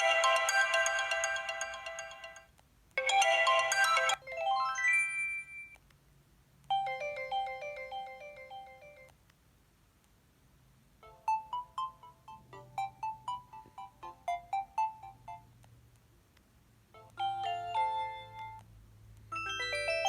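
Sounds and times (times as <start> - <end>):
phone ringtone melodies: 0.0 - 5.8, 6.7 - 9.1, 11.0 - 15.5, 17.0 - 18.6, 19.3 - 20.0.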